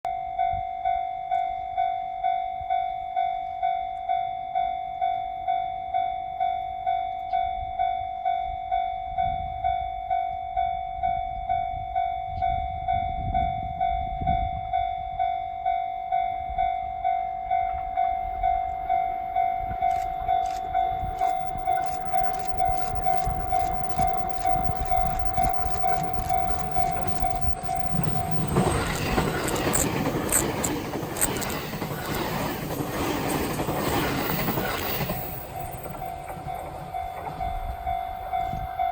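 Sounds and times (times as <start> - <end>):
level crossing bell ringing: 19.0 - 32.2
train wheels clicking over rail joints: 19.9 - 38.9.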